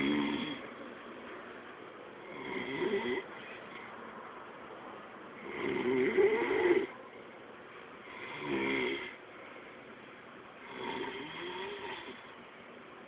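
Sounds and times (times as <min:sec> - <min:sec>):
person snoring: 0:00.0 - 0:00.6, 0:05.4 - 0:06.9, 0:08.1 - 0:09.2, 0:10.6 - 0:12.2.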